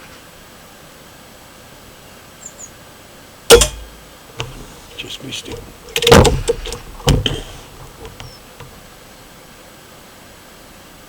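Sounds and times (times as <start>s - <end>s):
air rifle action clacks: 3.5s - 8.8s.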